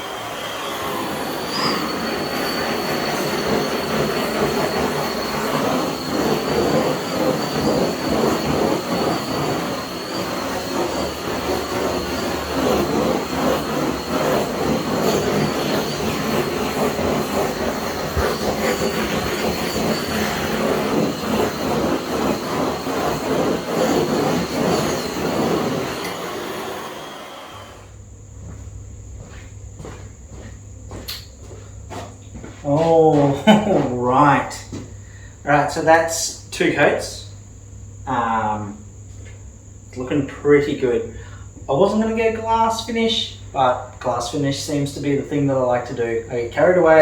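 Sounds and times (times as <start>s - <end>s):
power tool whining: 0.0s - 27.9s.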